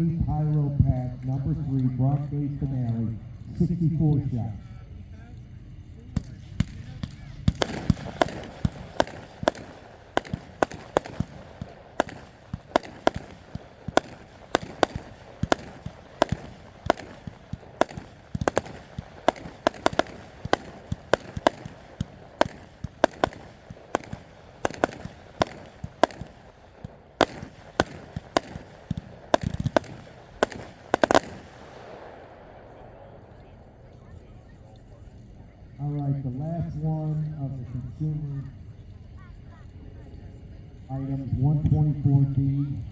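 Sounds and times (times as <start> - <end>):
fireworks cake sharp bangs: 6.0 - 34.4.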